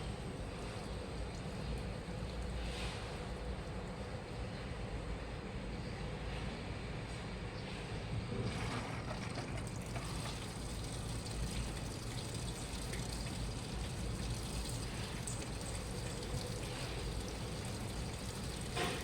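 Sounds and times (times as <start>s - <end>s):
water trickling in drum: 0.0s - 4.4s, 8.4s - 19.0s
washing machine motor hum: 0.0s - 5.2s, 8.2s - 19.0s.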